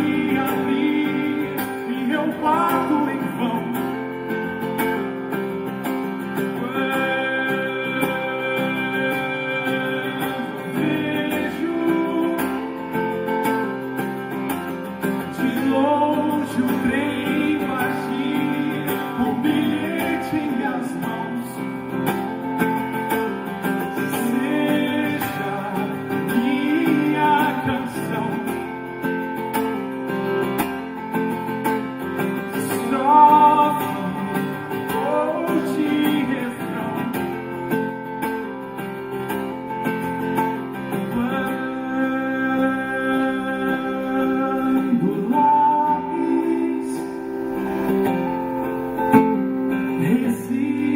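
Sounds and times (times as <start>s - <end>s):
song played on guitars: 0.0s - 50.9s
gliding melodic line: 46.2s - 50.0s.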